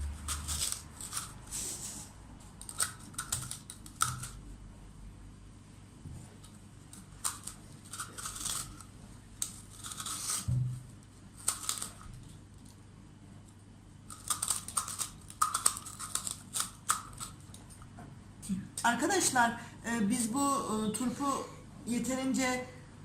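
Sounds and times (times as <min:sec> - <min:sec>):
metal corer scraping radish: 0:00.0 - 0:04.4, 0:07.2 - 0:10.8.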